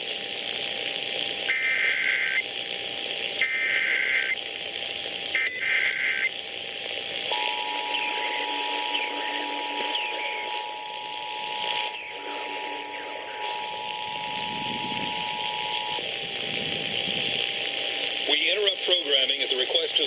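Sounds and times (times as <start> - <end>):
harsh warbling data bursts: 0.0 - 20.0
two-tone attention signal: 7.3 - 16.0.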